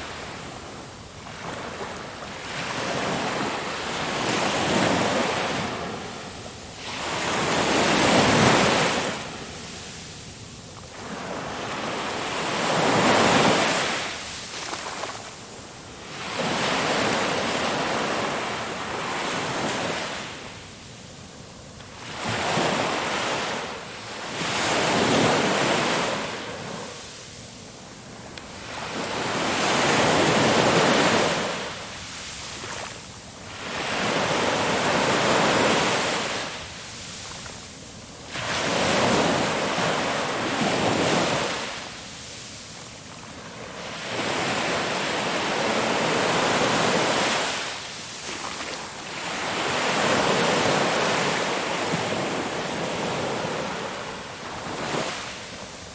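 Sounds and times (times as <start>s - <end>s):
wind: 0.0s - 55.9s
ocean waves breaking: 38.2s - 55.9s.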